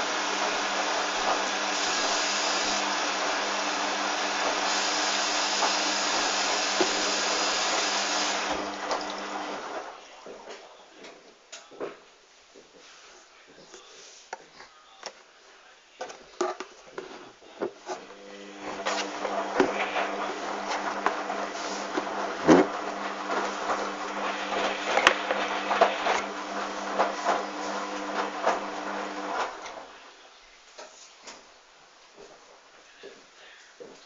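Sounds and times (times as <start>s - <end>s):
washing machine motor hum: 0.0s - 10.8s, 18.0s - 30.1s
hiss: 1.7s - 2.9s.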